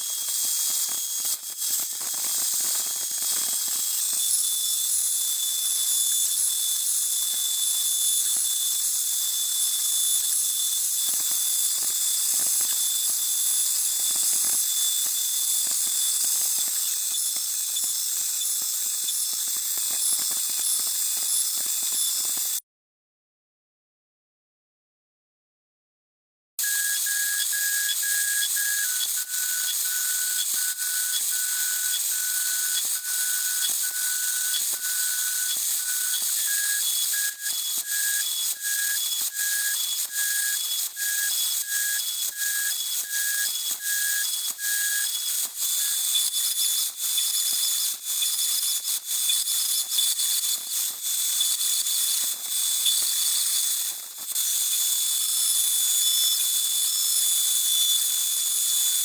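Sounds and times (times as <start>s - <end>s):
stepper motors whining in pulses: 26.6s - 45.1s.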